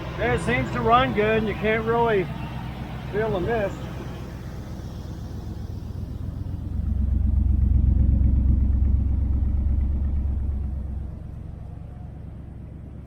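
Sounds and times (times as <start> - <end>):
truck engine idling: 0.0 - 13.0.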